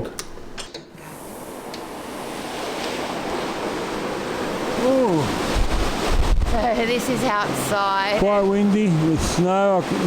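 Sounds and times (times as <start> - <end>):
strong rushing wind: 2.0 - 10.0.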